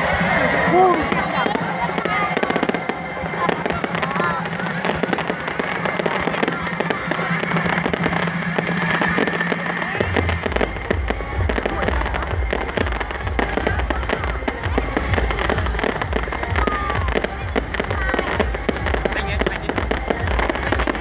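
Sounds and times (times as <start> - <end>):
amplified music: 0.0 - 21.0
deep pulsing bass beat: 0.0 - 21.0
dense continuous crackling: 0.0 - 21.0.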